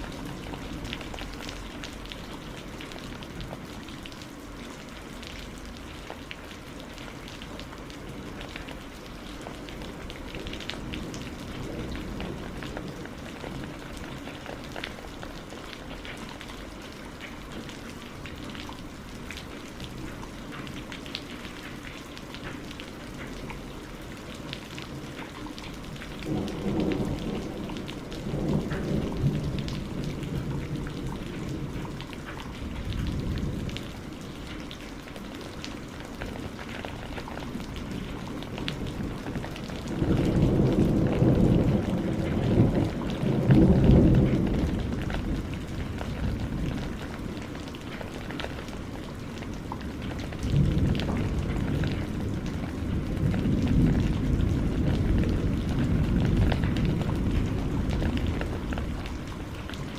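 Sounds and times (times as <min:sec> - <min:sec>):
low rumble of thunder: 0:00.0 - 0:21.8, 0:22.4 - 0:59.9
steady rain: 0:00.0 - 0:59.9.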